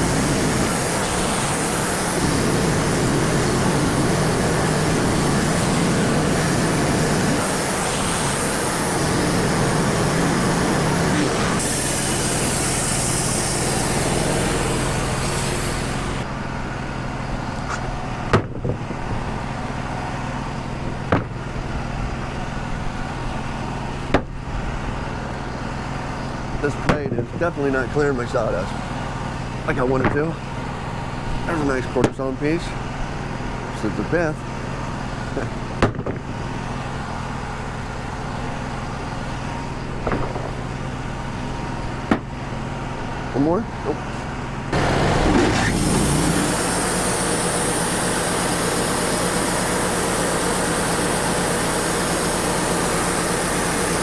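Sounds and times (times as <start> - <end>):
band saw blade cutting log: 0.0 - 16.2, 44.7 - 54.0
sawmill engine and blower droning: 0.0 - 54.0
sharp knocks: 17.7 - 18.8, 21.1 - 21.4, 35.8 - 36.3, 40.0 - 40.6, 42.1 - 42.3.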